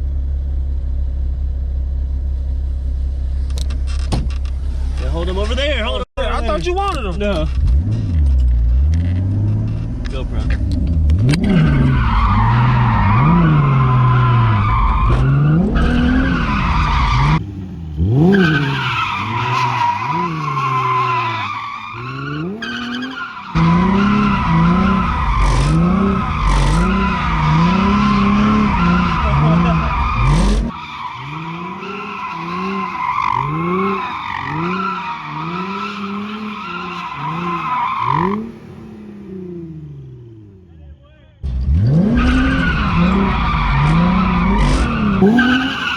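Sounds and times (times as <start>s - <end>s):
tires squealing: 3.8s - 40.4s, 41.4s - 45.9s
engine revving: 7.3s - 40.7s, 41.4s - 45.9s.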